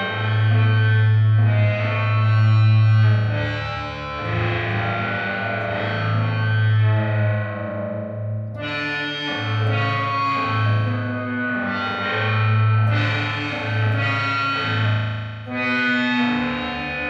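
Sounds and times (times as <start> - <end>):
distorted electric guitar notes: 0.0 - 17.0.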